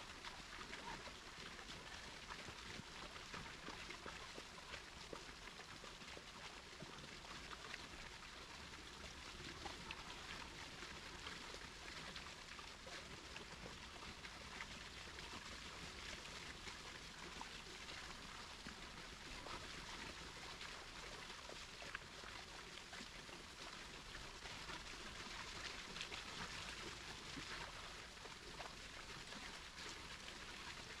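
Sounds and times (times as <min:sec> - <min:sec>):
small stream running: 0:00.0 - 0:31.0.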